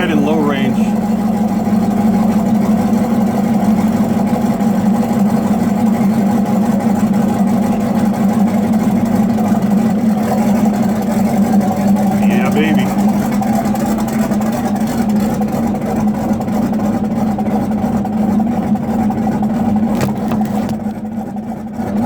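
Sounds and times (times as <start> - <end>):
truck engine running at low revs: 0.0 - 22.0.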